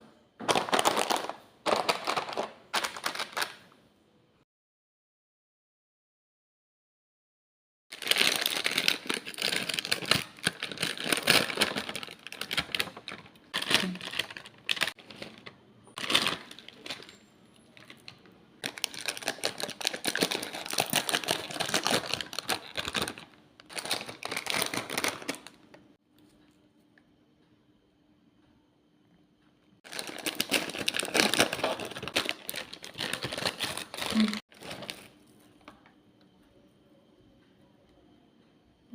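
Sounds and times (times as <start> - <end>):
snack packaging crackling: 0.5 - 3.6, 7.9 - 25.8, 29.8 - 35.1.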